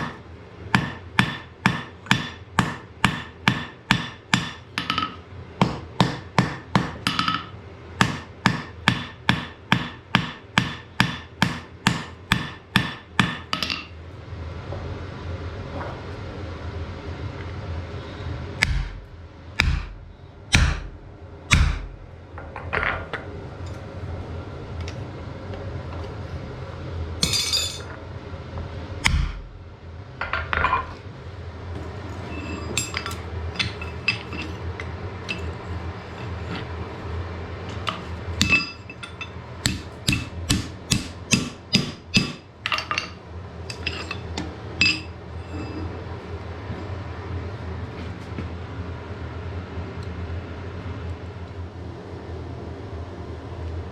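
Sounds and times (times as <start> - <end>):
low hum: 13.8 - 41.1
hammer blows on anvil: 27.2 - 27.9, 38.4 - 43.1.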